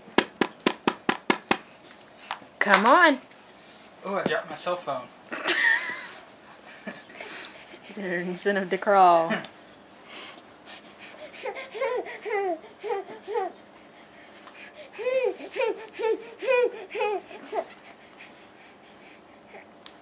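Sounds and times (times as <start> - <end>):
infant babbling: 11.3 - 13.7, 14.8 - 17.7.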